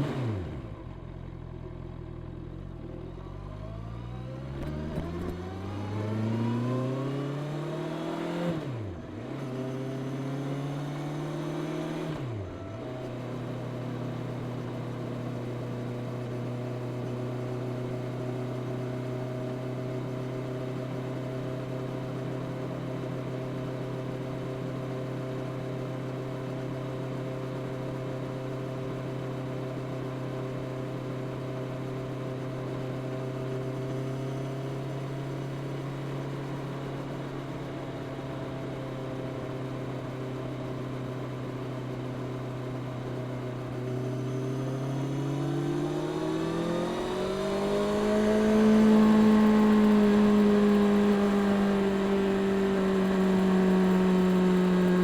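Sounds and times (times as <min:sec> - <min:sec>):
motorcycle engine revving: 0:04.5 - 0:12.3, 0:43.4 - 0:55.0.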